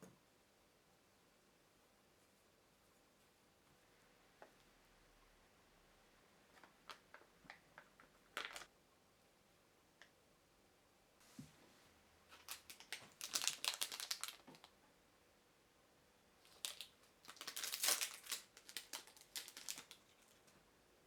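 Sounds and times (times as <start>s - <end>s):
plastic packaging crinkling: 6.8s - 8.7s, 12.3s - 14.7s, 16.5s - 20.6s.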